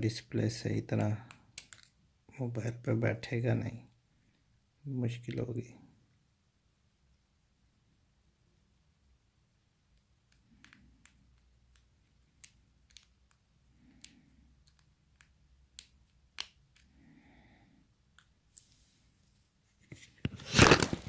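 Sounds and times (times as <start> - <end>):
rustling noise: 18.6 - 21.0.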